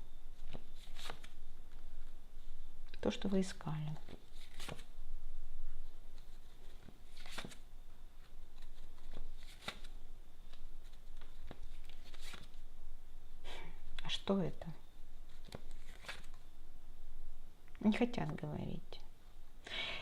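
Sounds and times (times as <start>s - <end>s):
cards shuffling: 0.4s - 2.0s, 3.9s - 4.9s, 6.1s - 7.6s, 8.2s - 12.6s, 15.3s - 16.4s.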